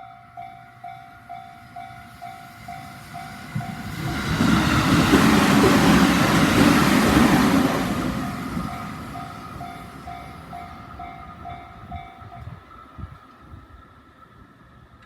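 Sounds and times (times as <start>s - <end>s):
level crossing warning bell: 0.0s - 4.1s, 8.2s - 12.5s
train wheel and rail noise: 0.0s - 15.0s.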